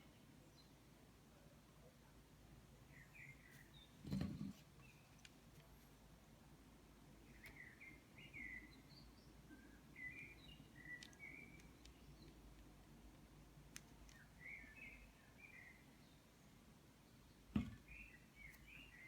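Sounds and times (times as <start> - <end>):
sharp clicks: 10.8 - 12.7.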